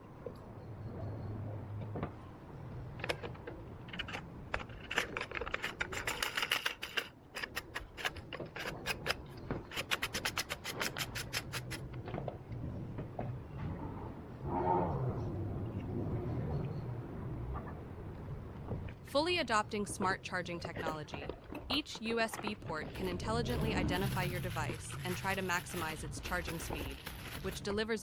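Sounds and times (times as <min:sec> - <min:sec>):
low steady hum: 0:11.8 - 0:28.0.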